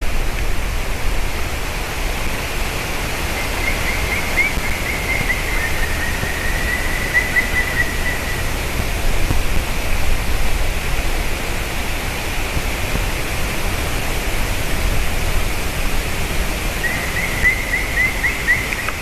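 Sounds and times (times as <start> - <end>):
steady rushing noise: 0.0 - 19.0
woodpecker calling: 3.4 - 8.6, 16.8 - 19.0.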